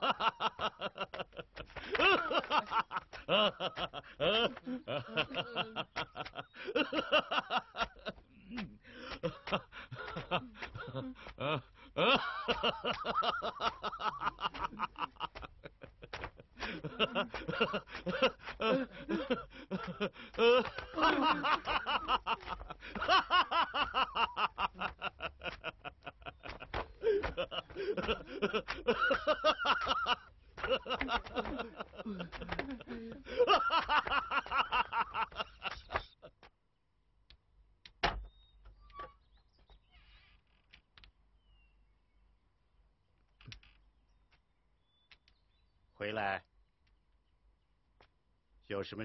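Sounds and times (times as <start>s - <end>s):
people laughing: 0.0s - 36.4s.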